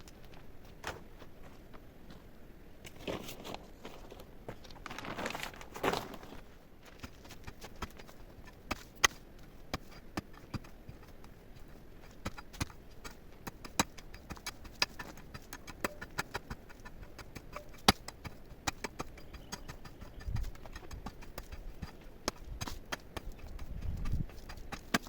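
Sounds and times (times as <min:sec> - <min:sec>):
hard objects knocking and clicking: 0:07.0 - 0:25.0.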